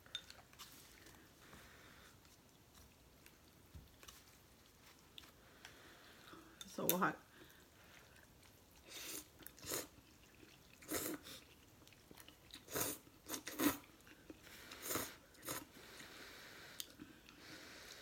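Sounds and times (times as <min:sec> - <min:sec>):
chewing: 0:07.4 - 0:16.1
noodle slurping: 0:08.0 - 0:18.0.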